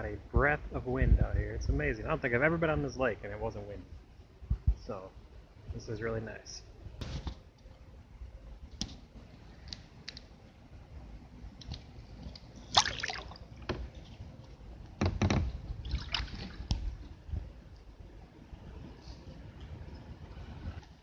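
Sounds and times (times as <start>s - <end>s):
paddle splashing in water: 12.7s - 14.1s, 15.8s - 16.9s
paddle knocks: 15.0s - 15.6s.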